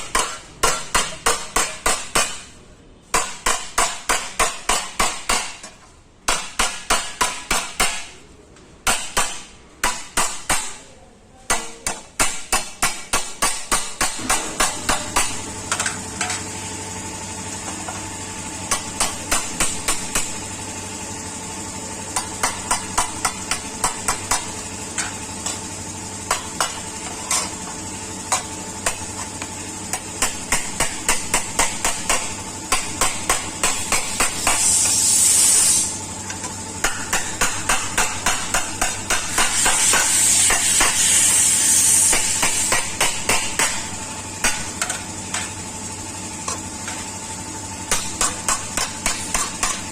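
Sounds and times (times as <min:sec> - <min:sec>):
hammer tapping on steel panel: 0:00.0 - 0:02.4.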